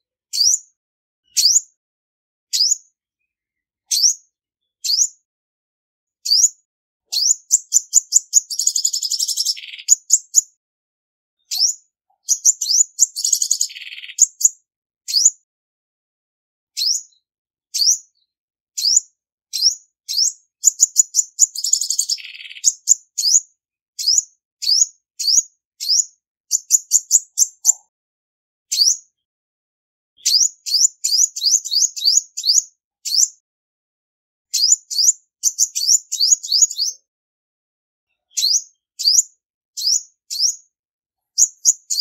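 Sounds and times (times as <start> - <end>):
bird chirping: 0.0 - 1.7, 2.5 - 5.2, 6.2 - 10.5, 11.4 - 15.4, 16.8 - 23.4, 24.0 - 27.9, 28.7 - 29.2, 30.2 - 33.4, 34.5 - 37.1, 38.1 - 42.0.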